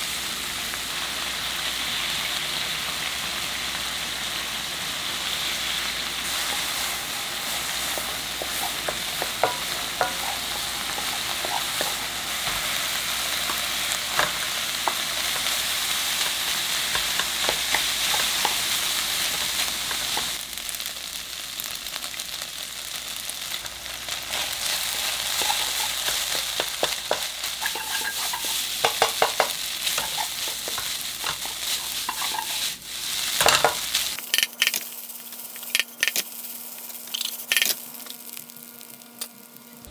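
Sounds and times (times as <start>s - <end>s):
rice sizzling in a frying pan: 0.0s - 39.9s
spatula clacking and scraping pan: 6.2s - 20.4s, 24.3s - 32.8s, 33.4s - 34.8s.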